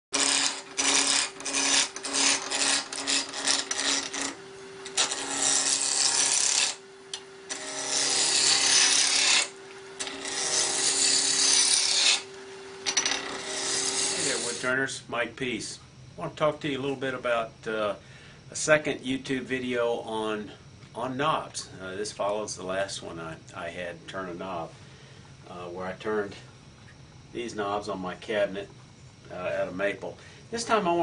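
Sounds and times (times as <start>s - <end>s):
turning tool cutting wood: 0.1s - 14.7s
wood lathe motor hum: 0.1s - 14.8s.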